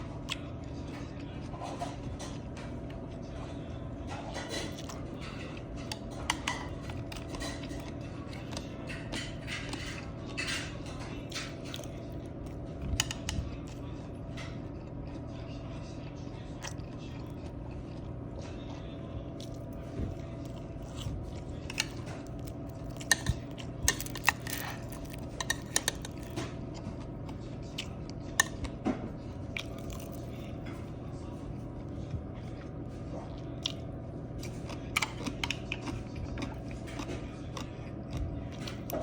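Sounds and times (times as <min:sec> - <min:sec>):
steady low hum: 0:00.0 - 0:39.0
person chewing: 0:04.6 - 0:10.5, 0:11.2 - 0:39.0
cutlery clicking on container: 0:21.7 - 0:26.4.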